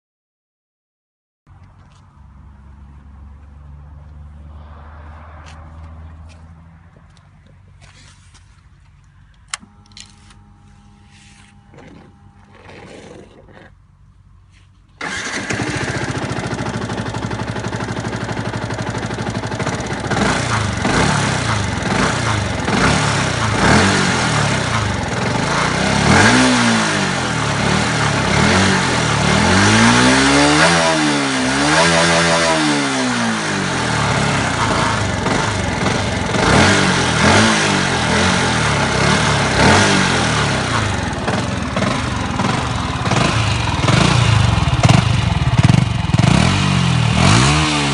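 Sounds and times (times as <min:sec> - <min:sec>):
motorcycle engine starting and revving: 0:07.0 - 0:47.9.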